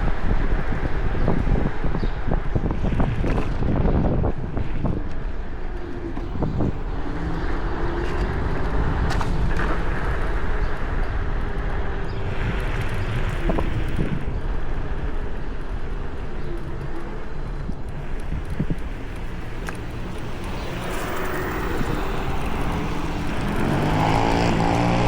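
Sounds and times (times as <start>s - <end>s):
wind rushing over microphone: 0.0s - 25.0s
electric motor whine: 18.2s - 25.0s.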